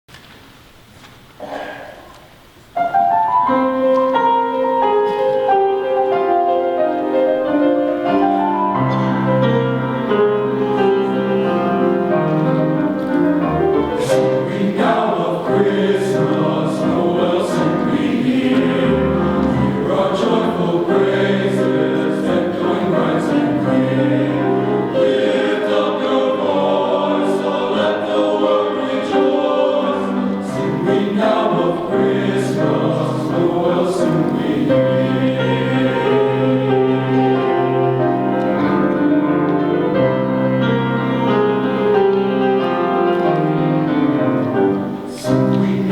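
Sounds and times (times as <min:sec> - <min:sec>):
men's chorus singing: 0:13.8 - 0:38.9, 0:45.1 - 0:45.9.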